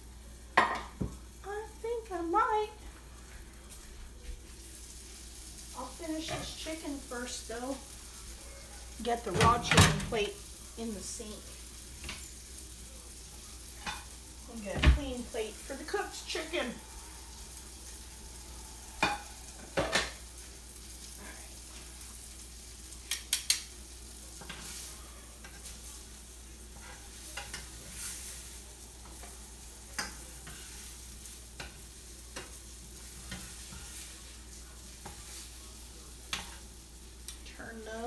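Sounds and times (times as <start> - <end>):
chicken sizzling in a skillet: 0.0 - 38.0
dishes or utensils clinking: 19.0 - 20.3.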